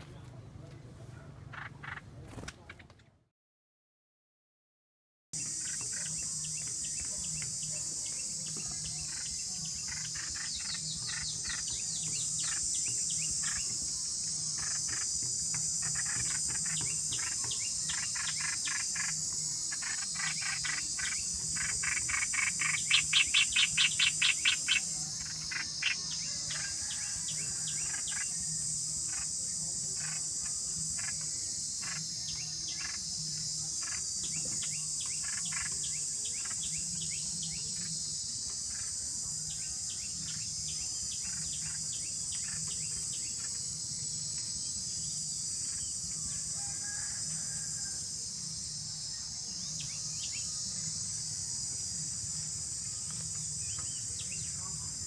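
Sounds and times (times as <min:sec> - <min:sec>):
insects droning: 0:01.3 - 0:02.0, 0:05.4 - 0:55.0
small birds chirping: 0:05.4 - 0:46.3.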